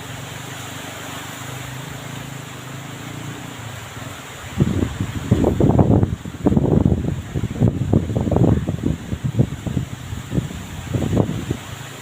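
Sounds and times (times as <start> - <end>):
heavy rain hissing: 0.0 - 12.0
gusty wind buffeting microphone: 4.4 - 12.0.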